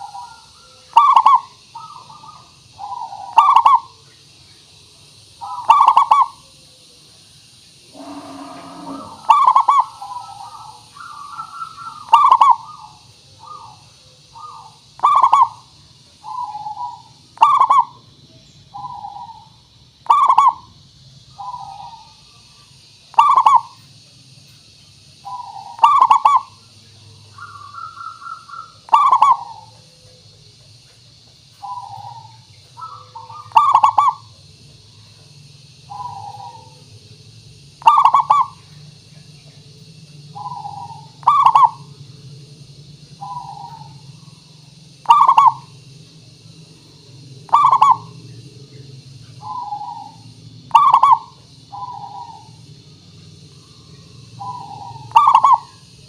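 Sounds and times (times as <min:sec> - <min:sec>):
dove cooing: 0:00.0 - 0:04.1, 0:05.4 - 0:07.0, 0:07.8 - 0:18.0, 0:18.7 - 0:20.7, 0:23.1 - 0:23.8, 0:25.2 - 0:30.6, 0:31.5 - 0:34.4, 0:35.9 - 0:37.0, 0:37.8 - 0:39.7, 0:40.3 - 0:42.2, 0:43.2 - 0:45.8, 0:46.9 - 0:52.6, 0:53.6 - 0:56.0.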